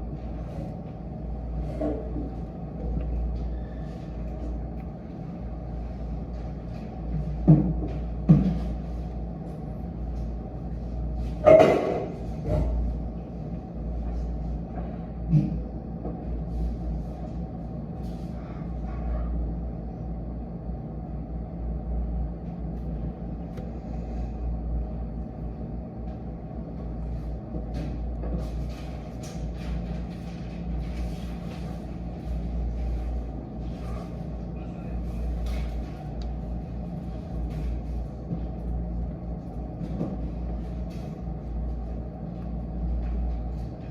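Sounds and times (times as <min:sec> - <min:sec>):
low room hum: 0:00.0 - 0:43.9
low background rumble: 0:12.2 - 0:43.9.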